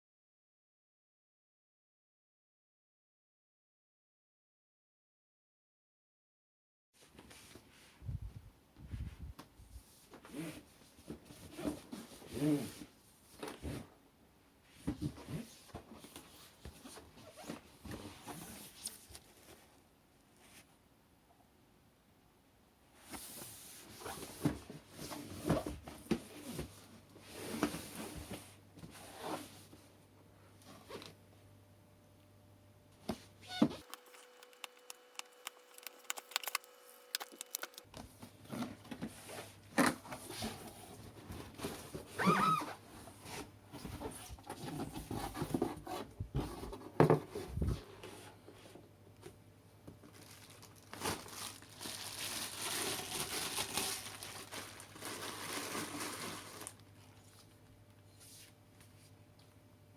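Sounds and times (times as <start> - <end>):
packaging tearing and crinkling: 33.8 - 37.9, 50.2 - 56.8.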